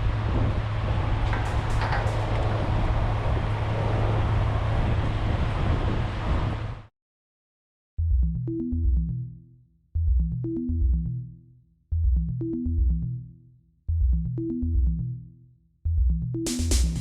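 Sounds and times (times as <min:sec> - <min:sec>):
electronic music with synth bass: 0:00.2 - 0:03.6, 0:08.0 - 0:17.0.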